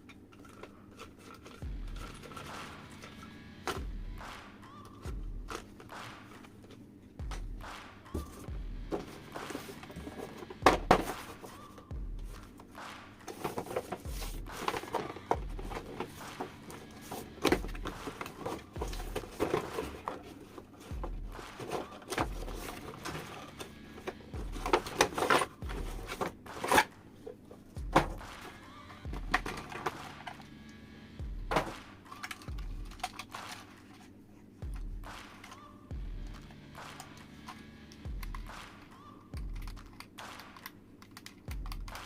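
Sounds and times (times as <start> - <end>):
plastic toys clicking and tapping: 0.0 - 3.8, 12.6 - 28.2, 31.5 - 34.1, 39.3 - 42.0.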